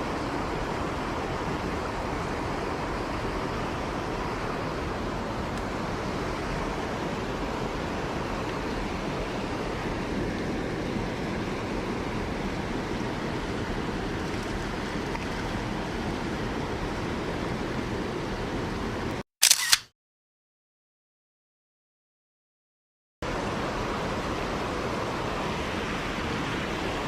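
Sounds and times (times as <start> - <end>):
stream water rushing: 0.0 - 19.1, 23.2 - 27.0
sharp double click: 19.4 - 19.9.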